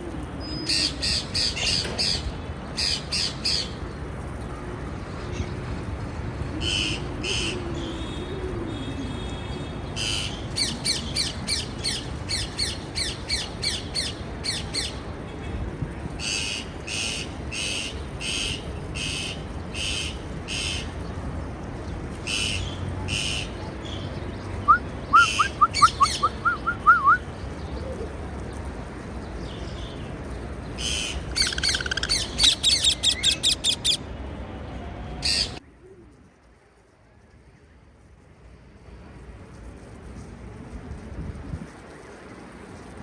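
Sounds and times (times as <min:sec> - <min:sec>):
parakeets chirping: 0:30.9 - 0:34.0.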